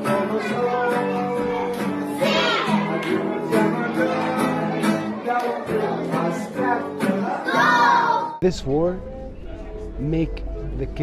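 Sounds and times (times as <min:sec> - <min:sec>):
children singing with accompaniment: 0:00.0 - 0:08.4.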